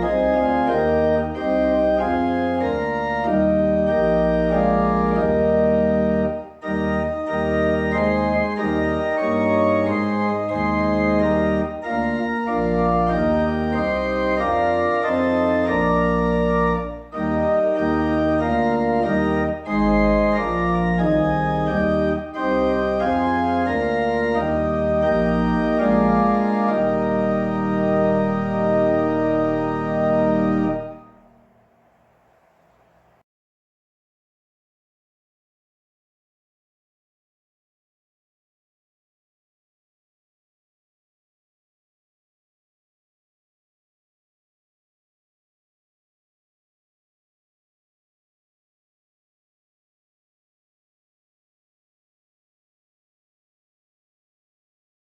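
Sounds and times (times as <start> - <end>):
organ playing chords: 0.0 - 32.9.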